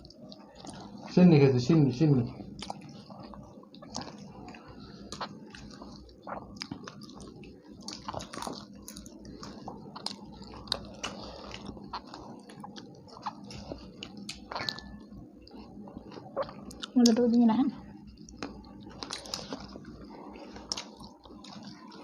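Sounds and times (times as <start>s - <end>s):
people chewing: 0.0s - 22.0s
mouth clicks and wet smacks: 3.8s - 15.0s, 16.1s - 17.2s.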